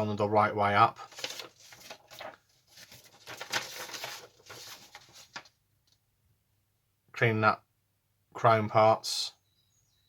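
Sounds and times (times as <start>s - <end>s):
paper rustling and crinkling: 1.0s - 5.6s.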